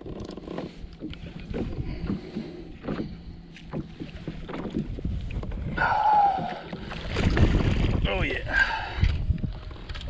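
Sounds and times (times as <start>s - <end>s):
fishing gear knocking on kayak hull: 0.1s - 5.7s.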